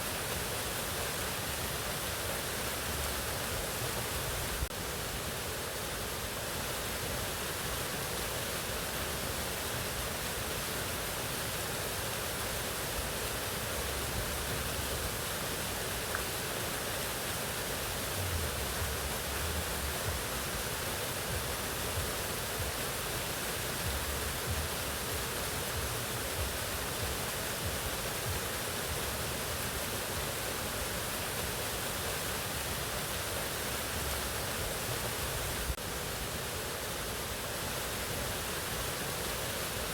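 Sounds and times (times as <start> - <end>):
waterfall rushing: 0.0 - 39.9
faint low rumble: 18.2 - 20.3.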